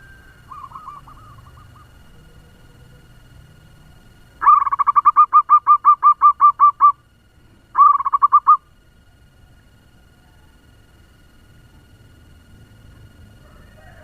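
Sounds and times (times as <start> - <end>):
dove calling short notes: 0.0 - 2.8, 4.4 - 7.0, 7.7 - 8.7.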